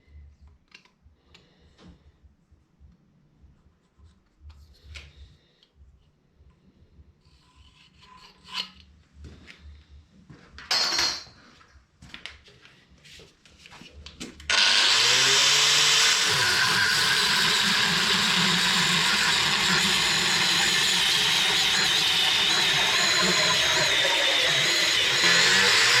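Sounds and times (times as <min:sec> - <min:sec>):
motor-driven machine spinning up: 0:14.5 - 0:26.0.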